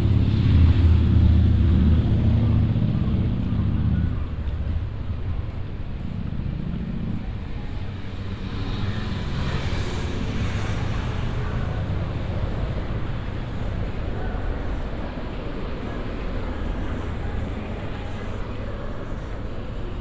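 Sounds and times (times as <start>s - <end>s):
low traffic rumble: 0.0s - 20.0s.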